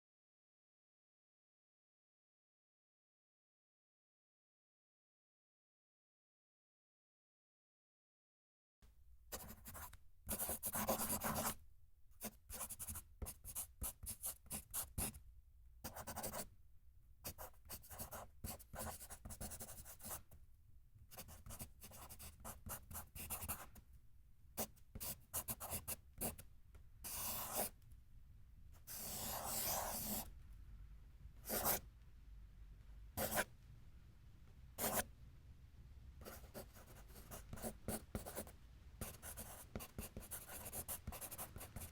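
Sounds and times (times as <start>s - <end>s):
pencil scratching on paper: 9.3s - 11.6s, 12.5s - 15.1s, 15.9s - 16.4s, 17.4s - 20.2s, 27.1s - 27.7s, 28.9s - 30.3s, 31.5s - 31.8s, 36.3s - 41.9s.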